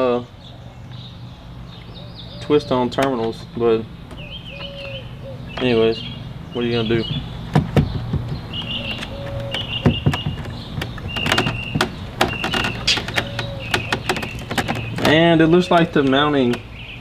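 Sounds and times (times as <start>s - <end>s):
clicks and knocks of handling: 7.0s - 16.7s.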